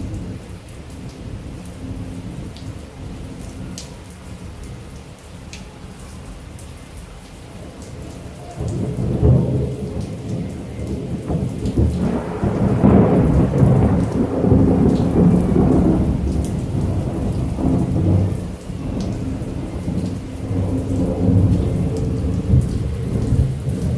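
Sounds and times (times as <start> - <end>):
heavy rain falling: 0.0 - 23.9
thunder rumbling: 8.2 - 23.9.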